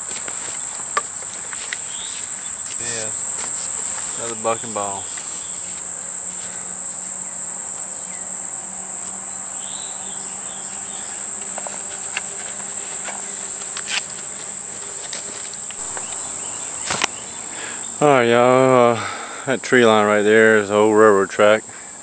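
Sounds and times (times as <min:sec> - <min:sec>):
insect chorus buzzing: 0:00.0 - 0:22.0.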